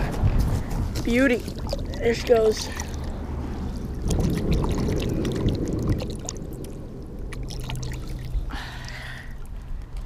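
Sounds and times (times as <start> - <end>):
water sloshing and trickling: 0.6 - 10.0.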